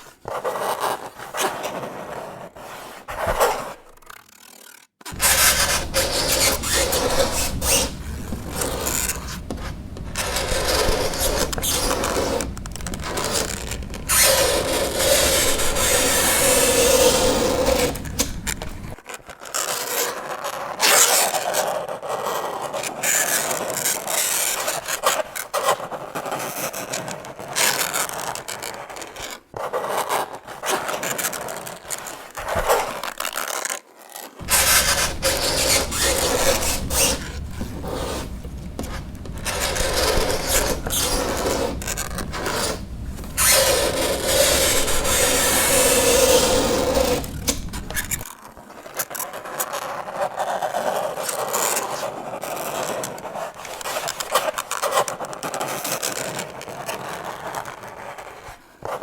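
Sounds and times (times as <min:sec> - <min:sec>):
fingernails scraping chalkboard: 0:00.0 - 0:19.0, 0:34.4 - 0:48.3.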